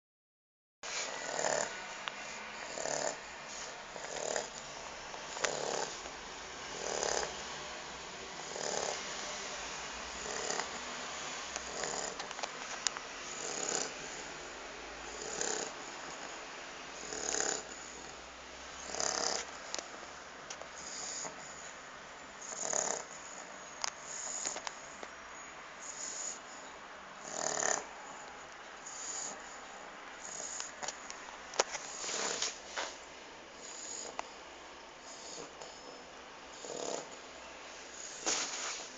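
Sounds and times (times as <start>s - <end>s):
dog snoring: 0.9s - 6.1s, 6.7s - 7.6s, 8.4s - 9.1s, 10.1s - 12.4s, 13.2s - 14.3s, 15.0s - 16.4s, 17.0s - 18.2s, 18.8s - 19.6s, 20.7s - 21.7s, 22.4s - 24.7s, 25.8s - 26.6s, 27.2s - 28.2s, 28.8s - 29.6s, 30.2s - 31.0s, 33.6s - 34.4s, 35.0s - 37.3s.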